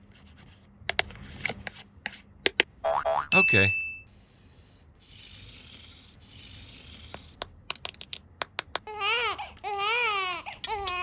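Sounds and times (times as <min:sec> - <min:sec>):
toy baby crying: 0:08.9 - 0:11.0
sharp plastic clicks: 0:09.6 - 0:11.0.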